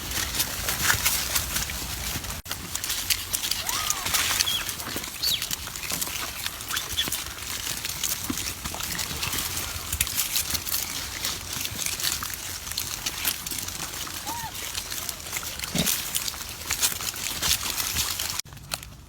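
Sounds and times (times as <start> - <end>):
crackling and rustling: 0.0 - 19.0
monkeys squeaking: 3.6 - 5.7, 14.0 - 15.9.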